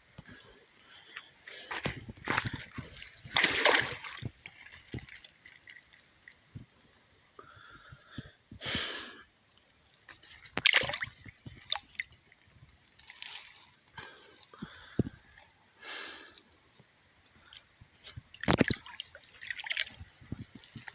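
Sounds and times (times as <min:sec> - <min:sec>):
stream water splashing: 0:01.1 - 0:06.3, 0:10.4 - 0:13.9, 0:18.4 - 0:20.9.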